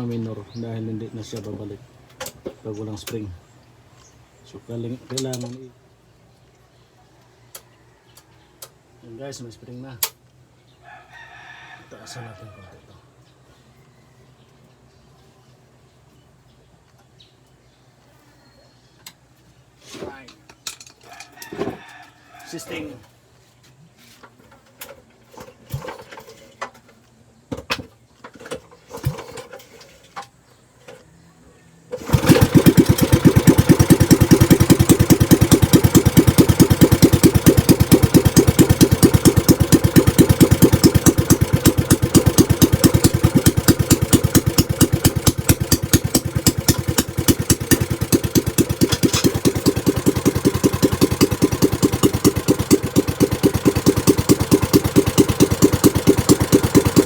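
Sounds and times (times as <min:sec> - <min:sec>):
boat engine running: 0:32.1 - 0:57.0.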